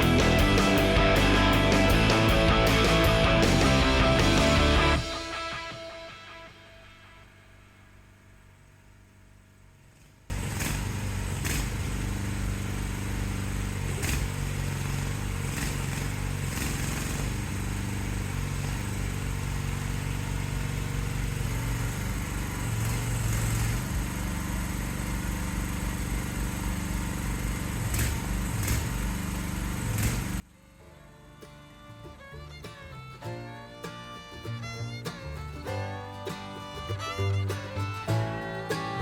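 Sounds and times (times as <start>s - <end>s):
mini excavator engine running: 0.0s - 5.3s, 9.7s - 39.0s.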